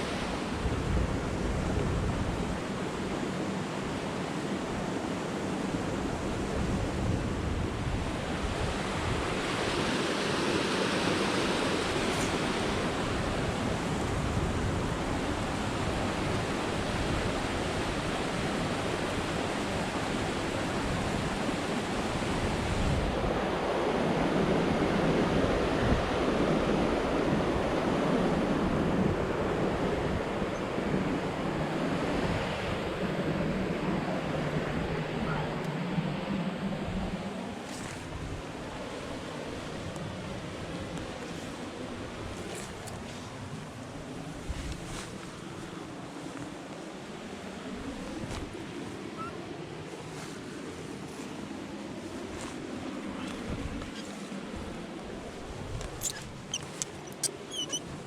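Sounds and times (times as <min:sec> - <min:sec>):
wind buffeting microphone: 0:00.0 - 0:03.1, 0:04.7 - 0:23.6, 0:50.0 - 0:58.0.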